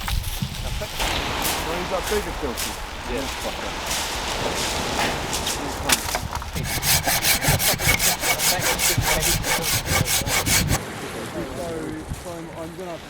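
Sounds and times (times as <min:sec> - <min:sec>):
saw cutting: 0:06.0 - 0:10.8.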